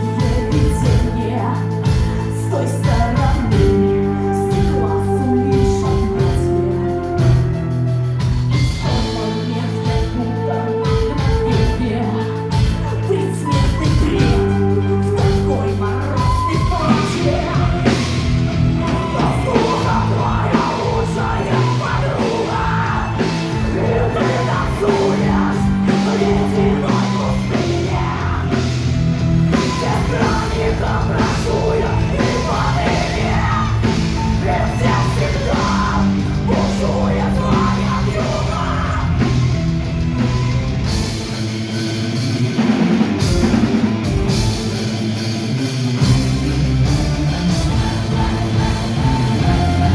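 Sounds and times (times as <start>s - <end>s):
heavy rock band playing: 0.0s - 49.9s
person singing and shouting: 8.8s - 28.8s, 29.5s - 39.4s.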